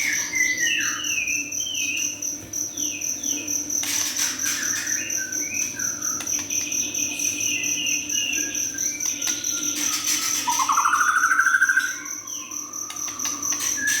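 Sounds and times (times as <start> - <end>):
bird singing phrases: 0.0 - 3.5, 4.5 - 14.0.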